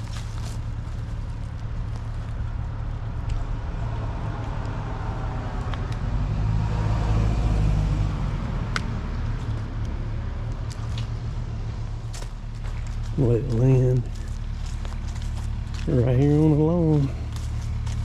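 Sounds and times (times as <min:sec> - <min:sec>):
excavator engine running: 0:07.5 - 0:18.0.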